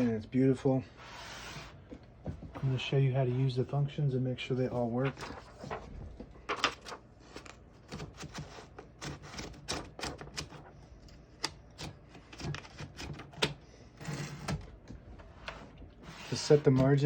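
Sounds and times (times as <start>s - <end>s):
typewriter sliding rasp: 7.9s - 10.7s, 11.8s - 14.7s, 15.4s - 17.0s
typewriter clicks and clacks: 9.0s - 10.6s.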